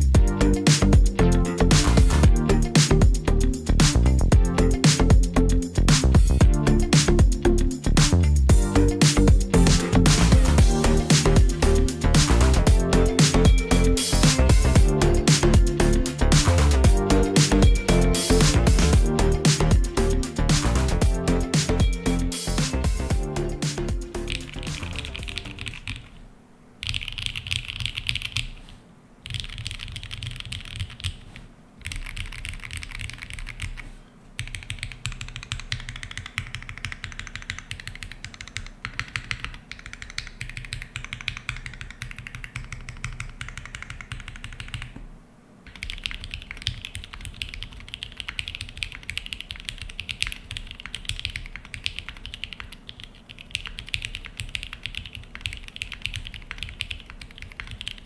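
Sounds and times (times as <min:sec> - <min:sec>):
mechanical keyboard typing: 0:23.6 - 0:26.2, 0:26.8 - 0:45.0, 0:45.7 - 0:58.0.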